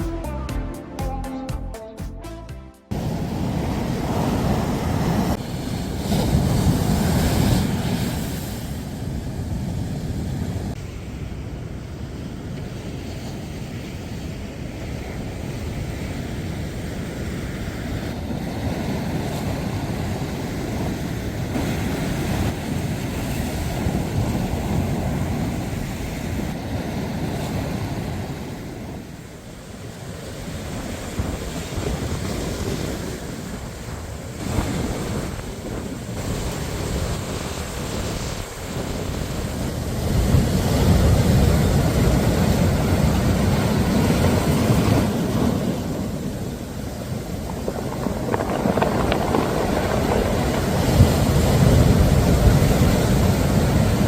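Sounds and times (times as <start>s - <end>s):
sea waves breaking on shore: 2.9s - 54.0s
wind buffeting microphone: 12.4s - 54.0s.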